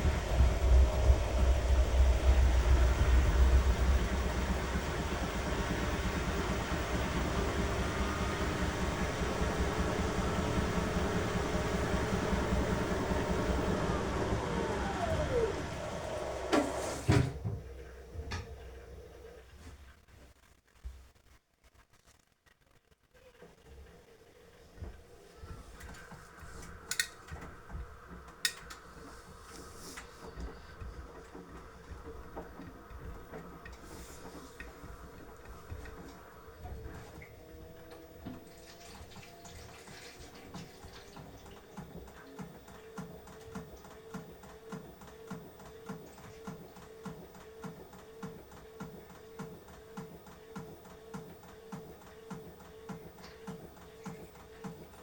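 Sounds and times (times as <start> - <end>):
washing machine motor hum: 0.0 - 19.8, 23.6 - 55.0
water swishing in washing machine drum: 29.0 - 42.2.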